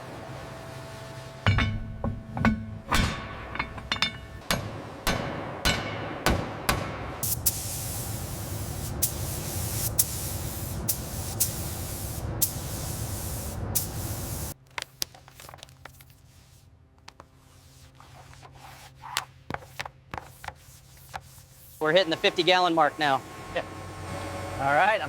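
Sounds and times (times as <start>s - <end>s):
low steady hum: 0.0s - 14.6s
paint spray gun hissing: 7.2s - 14.6s.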